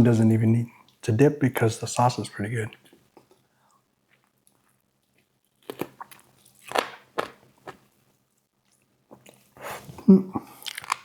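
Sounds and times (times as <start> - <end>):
chewing crunches on chicken wing: 5.1 - 7.8, 10.5 - 11.0.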